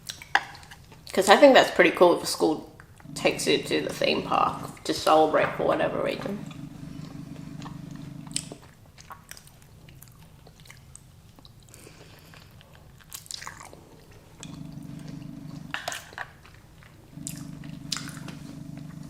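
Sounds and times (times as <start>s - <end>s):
low steady hum: 3.0s - 8.7s, 13.9s - 16.0s, 16.8s - 19.0s
person chewing food: 6.3s - 19.0s.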